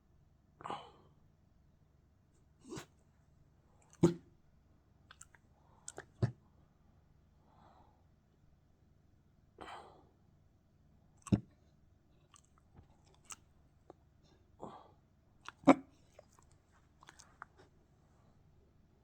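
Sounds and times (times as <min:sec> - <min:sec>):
soft noisy breath: 0:07.4 - 0:08.2, 0:09.6 - 0:10.2, 0:14.2 - 0:15.0.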